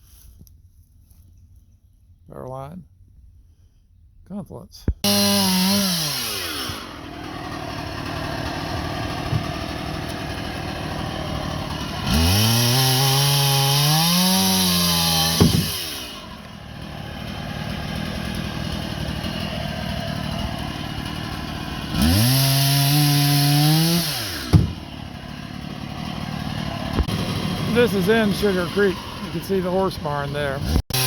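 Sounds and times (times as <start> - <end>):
small gasoline engine revving: 5.0 - 31.0
sharp knock: 15.4 - 15.8, 24.5 - 24.8.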